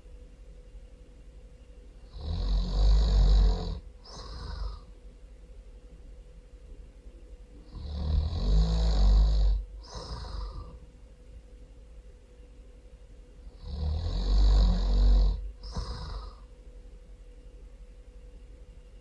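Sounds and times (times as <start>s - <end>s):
person snoring loudly: 2.1s - 4.9s, 7.7s - 10.8s, 13.5s - 16.5s
breathy exhale: 4.0s - 4.9s, 9.8s - 10.9s, 15.6s - 16.5s.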